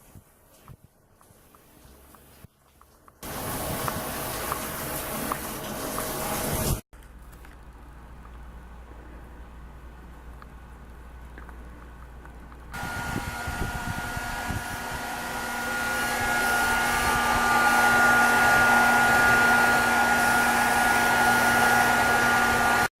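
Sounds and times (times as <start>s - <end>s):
hair dryer blowing: 3.2s - 6.8s, 12.8s - 22.9s.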